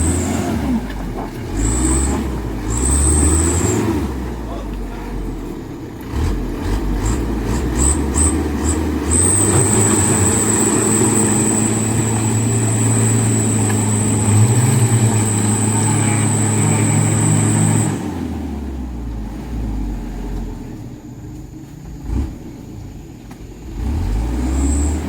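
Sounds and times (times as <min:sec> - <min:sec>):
diesel truck engine straining: 0:00.0 - 0:25.0
high steady whine: 0:10.4 - 0:17.9.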